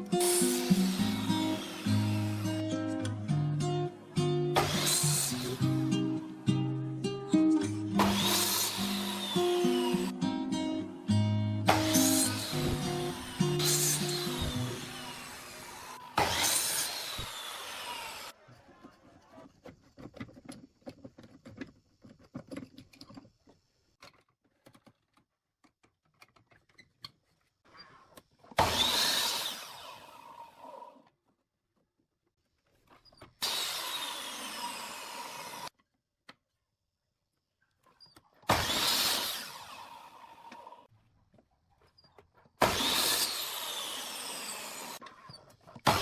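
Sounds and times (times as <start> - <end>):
power tool working wood: 0.0 - 3.3, 3.9 - 6.8, 7.9 - 18.4, 28.6 - 31.0, 33.4 - 35.7, 38.5 - 40.9, 42.6 - 45.2, 45.8 - 46.0.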